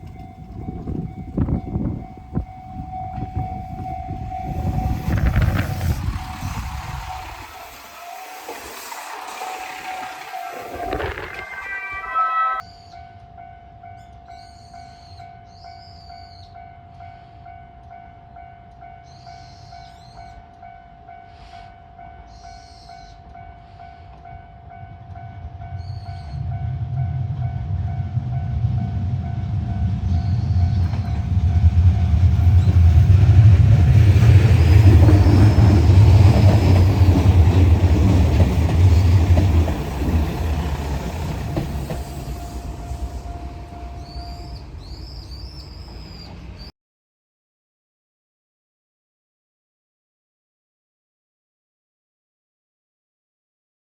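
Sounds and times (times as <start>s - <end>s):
diesel train passing: 0.0s - 46.7s
birds chirping: 40.2s - 46.7s.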